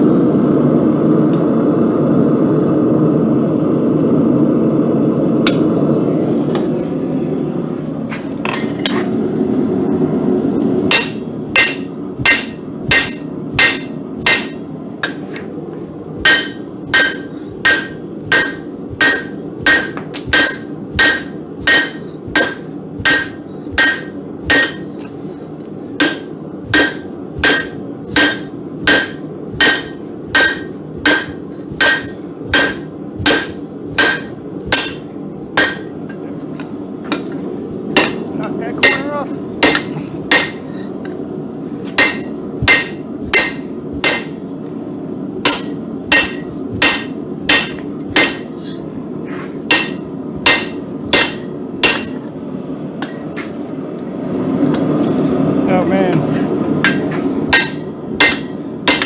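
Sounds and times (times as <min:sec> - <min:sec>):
steady rushing noise: 0:02.9 - 0:36.2, 0:37.0 - 0:59.0
hammer striking steel on anvil: 0:05.5 - 0:05.7, 0:08.4 - 0:09.1, 0:10.9 - 0:15.6, 0:16.2 - 0:25.2, 0:26.0 - 0:36.2, 0:38.0 - 0:41.2, 0:41.9 - 0:44.5, 0:45.4 - 0:48.8, 0:49.7 - 0:52.3, 0:53.0 - 0:53.5, 0:56.8 - 0:59.0.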